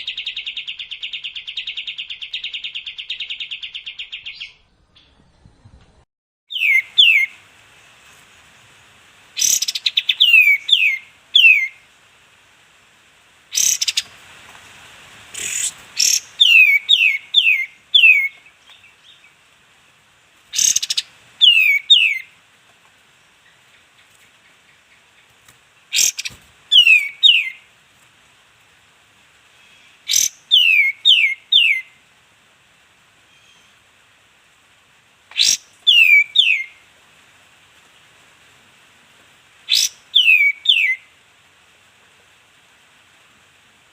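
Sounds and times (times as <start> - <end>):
songbird chirps: 0.0 - 5.9, 6.5 - 12.0, 12.7 - 28.1, 29.4 - 32.1, 33.2 - 34.1, 35.2 - 36.9, 39.5 - 41.3.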